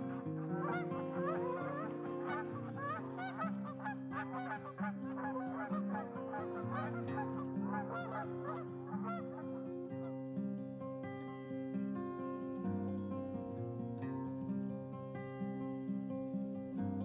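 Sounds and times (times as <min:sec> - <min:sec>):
geese honking: 0:00.0 - 0:10.4
soft guitar music: 0:00.0 - 0:17.0.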